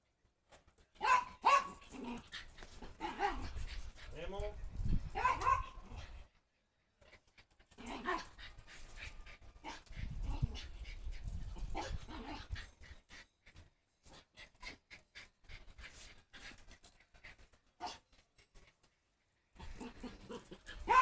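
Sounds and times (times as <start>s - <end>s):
dog whining and yelping: 5.1s - 6.1s, 19.6s - 21.0s.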